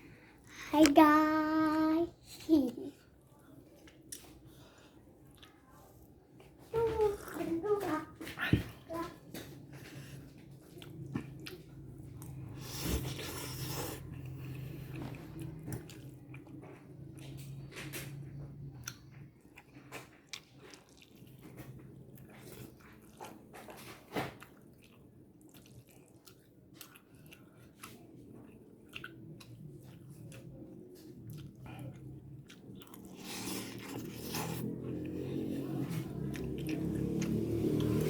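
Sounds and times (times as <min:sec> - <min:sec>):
person chewing noodles: 0:03.6 - 0:06.5, 0:09.9 - 0:17.4, 0:18.8 - 0:38.0.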